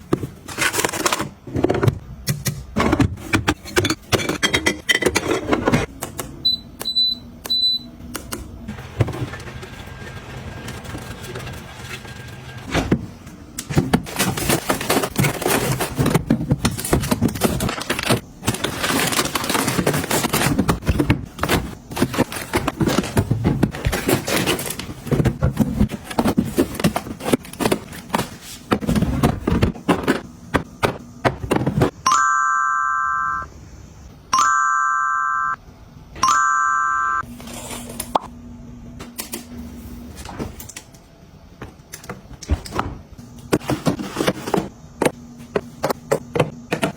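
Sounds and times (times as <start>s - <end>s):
packaging being handled: 14.0s - 28.7s
electronic beeps: 32.0s - 33.5s, 34.4s - 35.6s, 36.2s - 37.2s.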